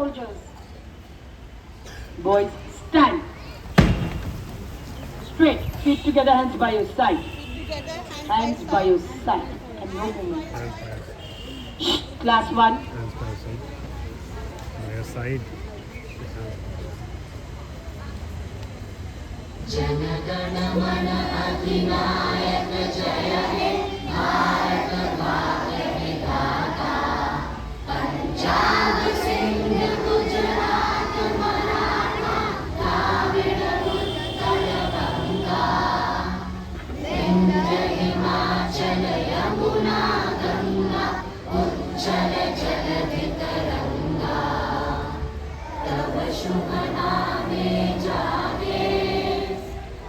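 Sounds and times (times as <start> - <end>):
boys singing an anthem in chorus: 19.6 - 50.0.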